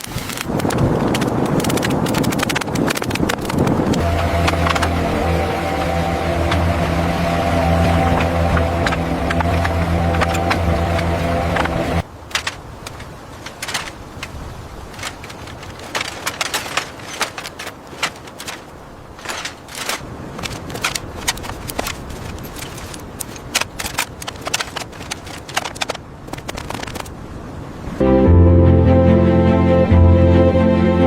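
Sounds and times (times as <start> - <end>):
engine-like hum: 3.8 - 12.0.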